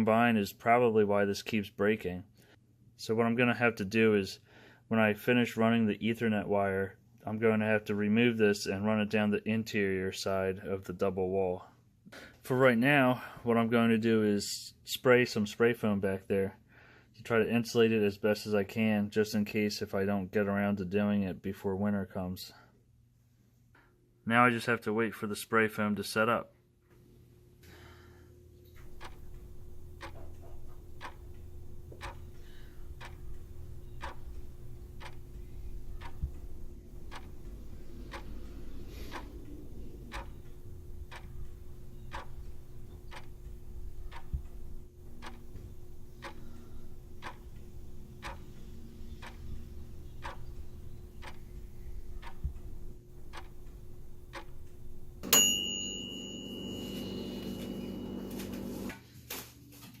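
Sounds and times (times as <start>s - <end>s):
faint steady hum: 22.2s - 59.1s
clock ticking: 28.8s - 58.8s
loud ringing: 54.7s - 58.9s.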